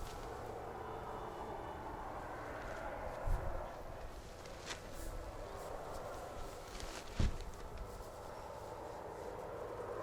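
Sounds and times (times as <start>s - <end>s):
wind buffeting microphone: 1.4s - 10.0s.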